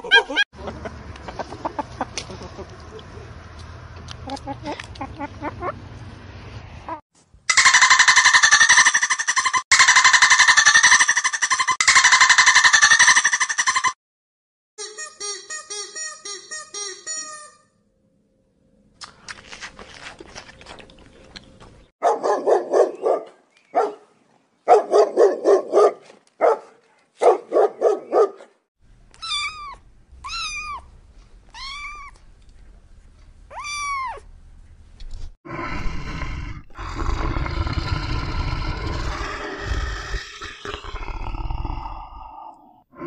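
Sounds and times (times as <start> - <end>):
cat meowing: 29.2 - 30.9, 31.5 - 32.2, 33.5 - 34.3
loud rough animal call: 35.5 - 43.0.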